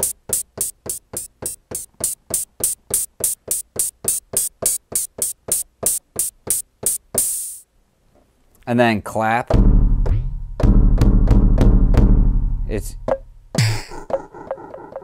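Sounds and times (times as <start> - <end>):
electronic open hi-hat hits: 0.0 - 7.6, 9.5 - 13.3.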